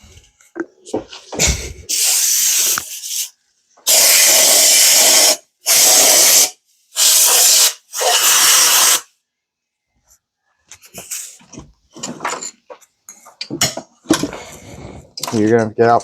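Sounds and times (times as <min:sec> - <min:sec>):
nozzle hissing blasts: 0:01.5 - 0:09.1.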